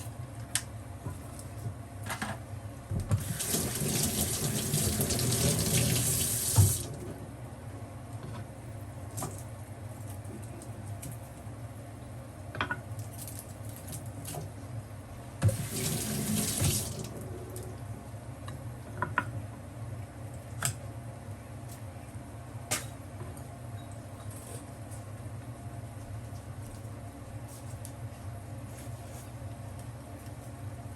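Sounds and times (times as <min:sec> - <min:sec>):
water rushing from a tap: 0:03.1 - 0:06.9, 0:15.4 - 0:17.1.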